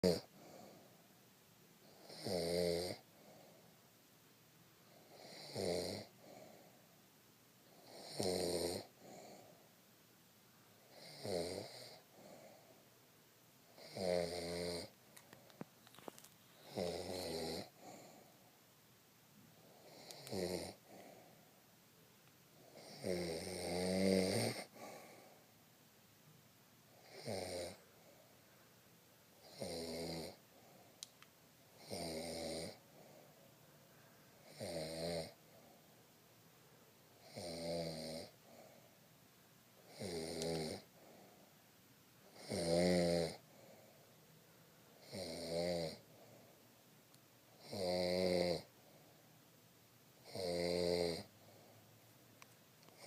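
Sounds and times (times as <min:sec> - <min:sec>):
person snoring: 0:00.0 - 0:00.8, 0:01.8 - 0:03.6, 0:04.9 - 0:06.7, 0:07.7 - 0:09.6, 0:10.9 - 0:12.7, 0:13.8 - 0:14.9, 0:16.2 - 0:18.3, 0:19.6 - 0:21.4, 0:22.6 - 0:25.4, 0:27.0 - 0:27.8, 0:29.4 - 0:30.4, 0:31.8 - 0:33.2, 0:34.4 - 0:35.8, 0:37.2 - 0:38.8, 0:39.9 - 0:41.4, 0:42.3 - 0:43.9, 0:45.0 - 0:46.3, 0:47.6 - 0:48.7, 0:50.2 - 0:51.8
quiet breathing: 0:00.0 - 0:02.1, 0:02.8 - 0:04.0, 0:04.6 - 0:25.8, 0:26.8 - 0:42.4, 0:43.2 - 0:45.3, 0:45.9 - 0:47.8, 0:48.5 - 0:49.6, 0:51.1 - 0:53.0.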